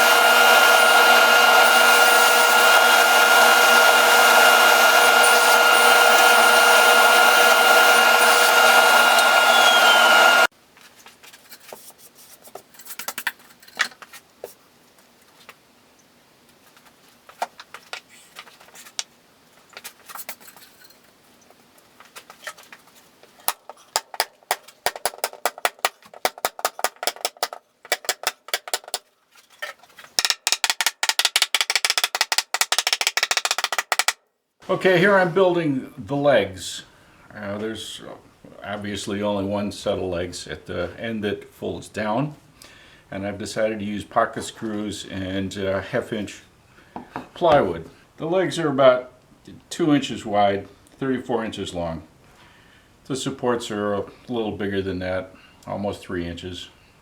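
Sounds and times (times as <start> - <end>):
power tool whining: 0.0 - 10.5, 30.2 - 34.2
knocks and clicks on wood: 23.5 - 29.0, 30.2 - 34.2.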